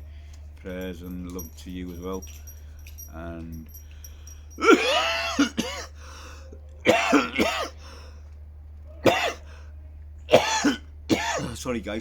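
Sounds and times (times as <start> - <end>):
man coughing loudly: 4.6 - 6.0, 6.8 - 7.8, 9.0 - 9.5, 10.3 - 11.7.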